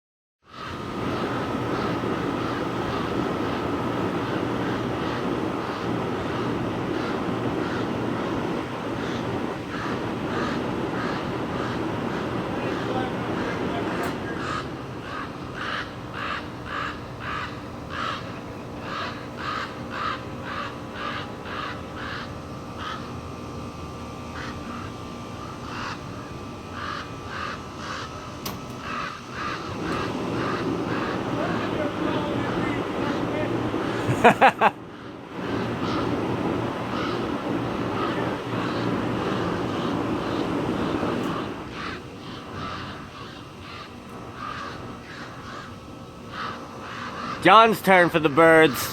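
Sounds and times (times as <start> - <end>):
raven calling: 0.4 - 48.9
wind noise on microphone: 35.3 - 43.3.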